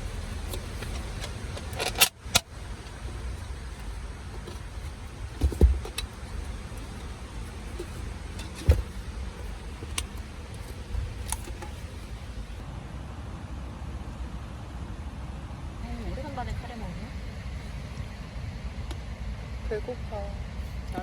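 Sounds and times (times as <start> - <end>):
gear knocks and metallic clinks: 0.0 - 12.5
thumps: 0.0 - 12.6.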